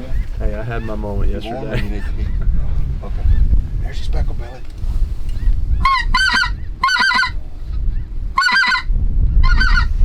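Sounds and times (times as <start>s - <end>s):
low wind rumble: 0.0s - 10.0s
geese honking: 5.8s - 7.4s, 8.4s - 10.0s.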